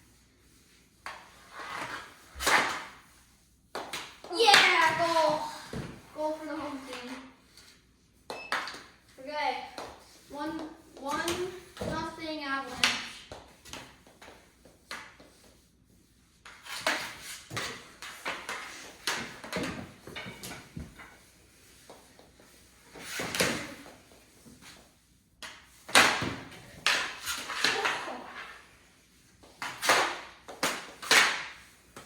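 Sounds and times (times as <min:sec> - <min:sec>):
hockey sticks clacking and scraping: 0:01.0 - 0:15.6, 0:16.3 - 0:32.0.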